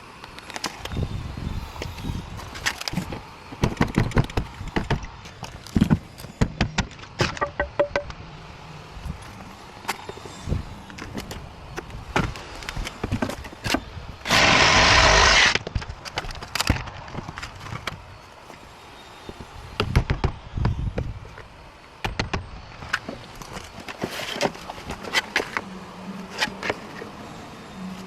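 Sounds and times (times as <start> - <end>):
sharp knocks and clicks: 5.8 - 8.2
air tool hissing burst: 14.3 - 15.6.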